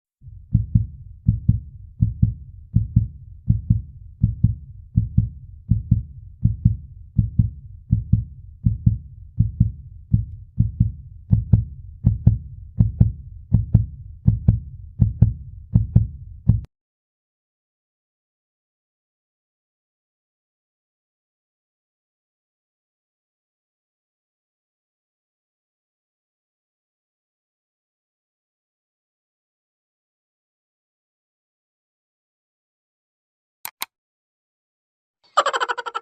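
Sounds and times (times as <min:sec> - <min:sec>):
low double thumping: 0:00.2 - 0:16.7.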